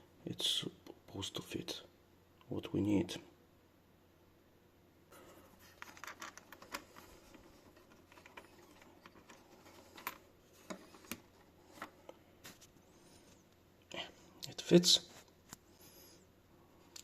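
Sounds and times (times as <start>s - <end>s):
metal parts clicking: 5.8s - 10.2s.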